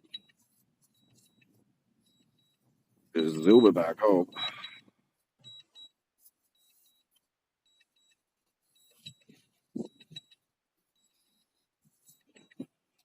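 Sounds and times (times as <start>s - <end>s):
high-pitched electronic beeps: 3.2s - 6.0s.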